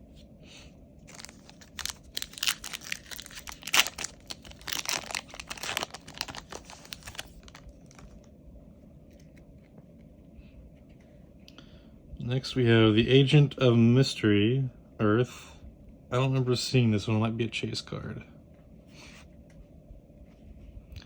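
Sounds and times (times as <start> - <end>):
foil wrapper tearing and crinkling: 1.1 - 8.2.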